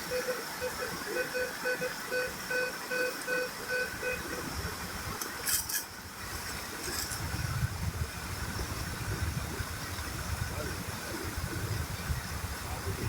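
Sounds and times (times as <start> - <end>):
vehicle warning beeper: 0.1 - 4.3.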